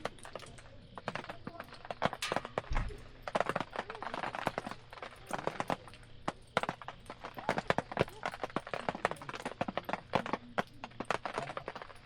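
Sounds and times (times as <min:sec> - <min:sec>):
wood fire crackling and popping: 0:00.0 - 0:12.0
low thump: 0:02.6 - 0:03.0.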